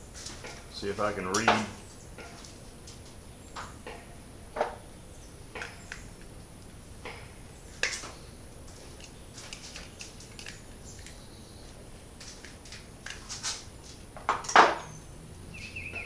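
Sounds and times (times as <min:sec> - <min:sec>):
small clicks and taps of parts: 0:07.8 - 0:11.2.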